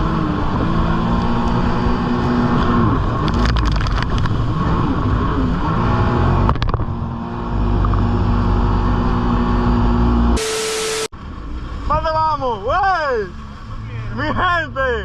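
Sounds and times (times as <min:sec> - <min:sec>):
jet ski engine running: 0:00.0 - 0:11.9
rush of noise: 0:10.2 - 0:11.1.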